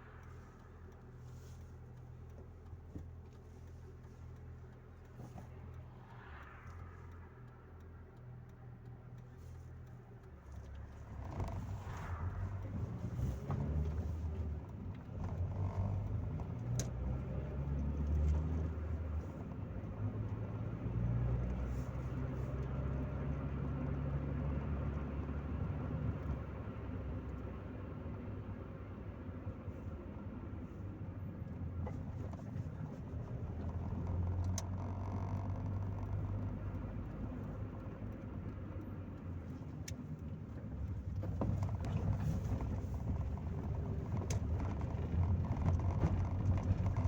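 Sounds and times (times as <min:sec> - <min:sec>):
low engine drone: 0:00.0 - 0:16.4
road noise inside car: 0:00.0 - 0:47.0.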